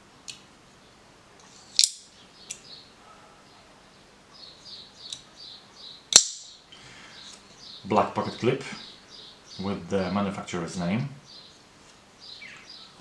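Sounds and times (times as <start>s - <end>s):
knife spring mechanism snap: 1.8s - 2.6s, 6.1s - 6.5s.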